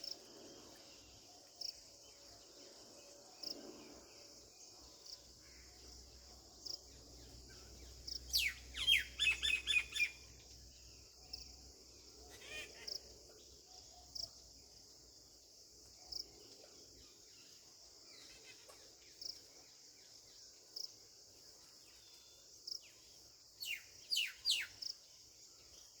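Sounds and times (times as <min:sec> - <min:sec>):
small birds chirping: 0:05.0 - 0:14.3, 0:21.6 - 0:25.1.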